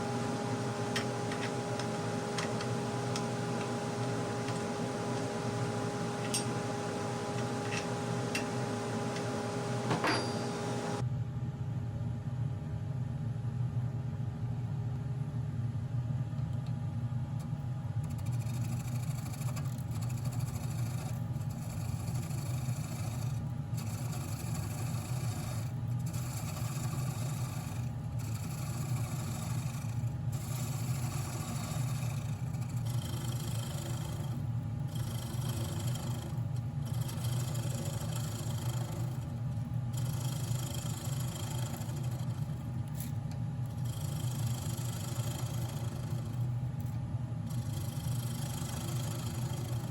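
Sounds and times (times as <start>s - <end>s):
tool scraping spinning wood: 0.0s - 11.0s, 18.0s - 49.9s
wood lathe motor hum: 0.0s - 11.0s, 18.6s - 43.1s, 43.7s - 46.5s, 47.5s - 49.9s.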